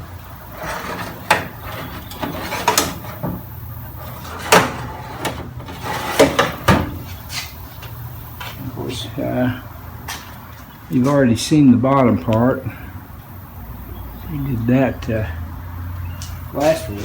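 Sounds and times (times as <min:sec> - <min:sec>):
metal drawers sliding: 0:00.0 - 0:07.5
drawers knocking shut: 0:00.6 - 0:07.1.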